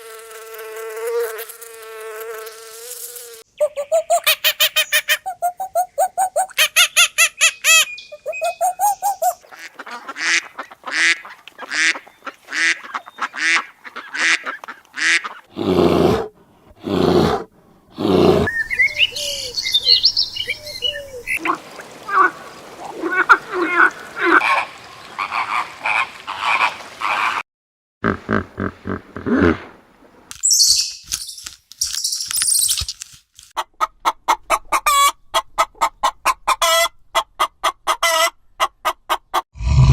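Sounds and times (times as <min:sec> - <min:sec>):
high chirps: 0:30.4 - 0:32.8.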